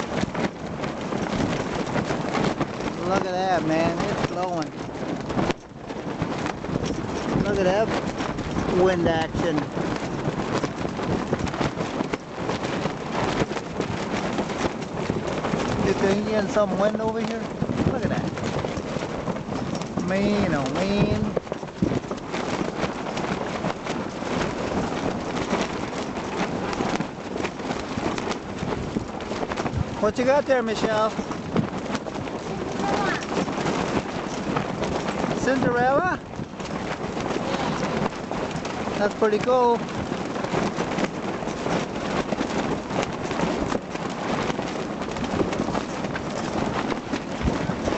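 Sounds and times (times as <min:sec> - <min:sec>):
wind blowing against microphone: 0:00.0 - 0:47.9.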